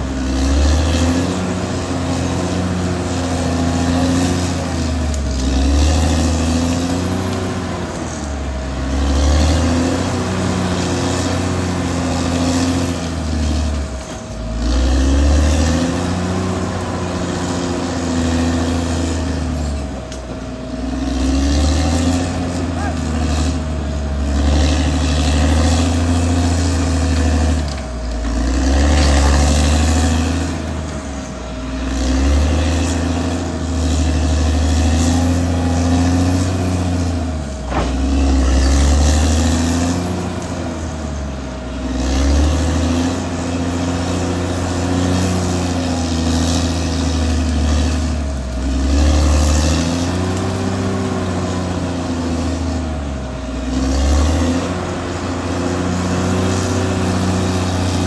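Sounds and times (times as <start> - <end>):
bulldozer diesel engine running: 0.0 - 58.0
sharp metal clank: 37.6 - 38.7.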